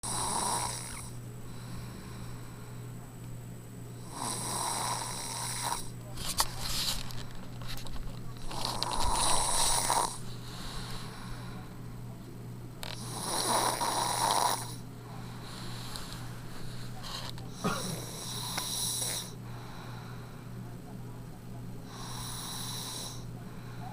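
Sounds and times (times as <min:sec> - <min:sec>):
person snoring: 0:00.0 - 0:02.3, 0:04.0 - 0:05.9, 0:08.5 - 0:11.5, 0:12.9 - 0:14.8, 0:17.6 - 0:19.4, 0:21.9 - 0:23.3.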